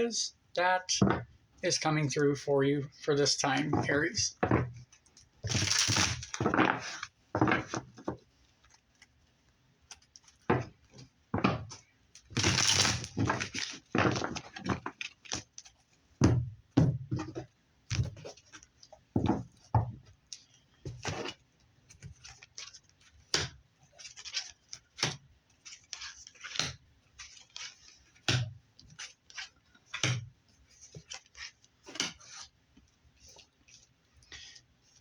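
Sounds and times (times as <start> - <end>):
cards slapping and snapping: 5.5 - 6.4, 12.4 - 13.9, 23.4 - 30.3
cards brushing: 24.0 - 28.2, 28.9 - 32.6, 33.2 - 35.0.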